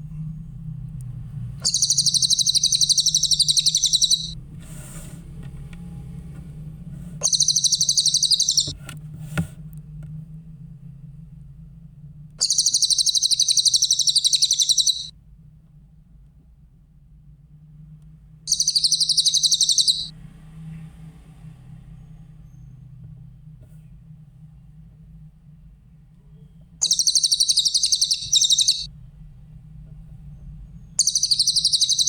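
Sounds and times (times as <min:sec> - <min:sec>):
steady low hum: 0:00.0 - 0:20.2, 0:23.6 - 0:32.0
bird singing fast high trill: 0:01.6 - 0:04.4, 0:07.2 - 0:08.7, 0:12.4 - 0:15.1, 0:18.5 - 0:20.1, 0:26.8 - 0:28.9, 0:31.0 - 0:32.0.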